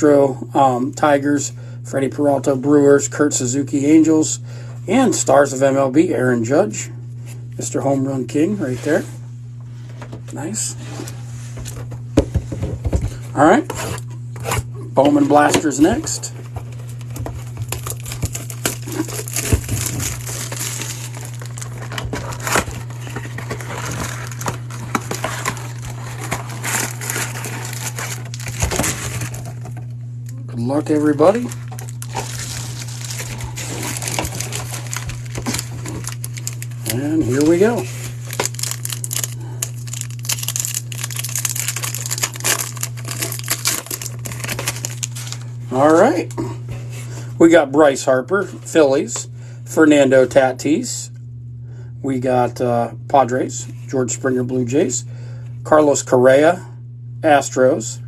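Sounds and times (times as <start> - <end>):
steady low hum: 0.0 - 58.0
plastic wrap crinkling: 16.6 - 29.8, 31.0 - 45.5.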